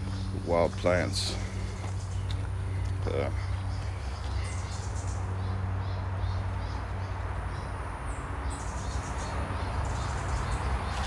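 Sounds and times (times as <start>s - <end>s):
steady low rumble: 0.0s - 5.8s.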